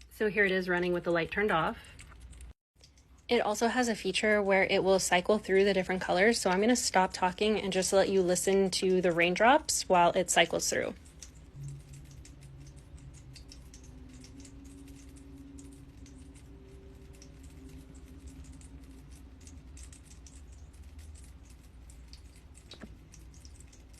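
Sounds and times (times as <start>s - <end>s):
low steady hum: 0.0s - 23.9s
water drops pattering: 1.1s - 23.9s.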